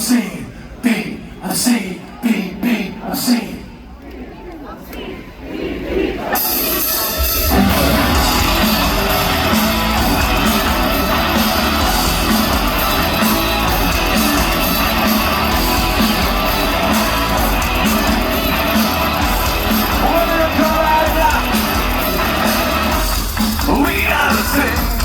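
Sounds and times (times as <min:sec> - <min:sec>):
heavy metal band playing: 0:06.3 - 0:25.0.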